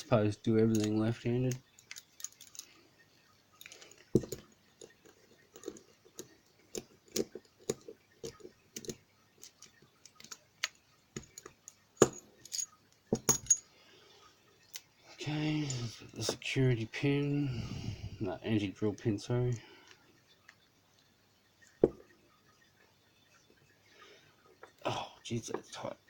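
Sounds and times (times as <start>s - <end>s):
padlock parts clicking and knocking: 0.0s - 13.7s.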